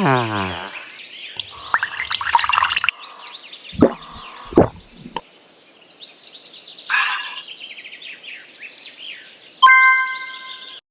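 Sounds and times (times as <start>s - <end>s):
small birds chirping: 0.0s - 9.6s.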